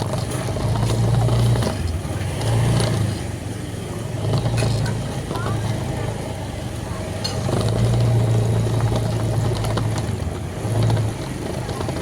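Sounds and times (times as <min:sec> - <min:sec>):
vehicle engine humming: 0:00.0 - 0:12.0.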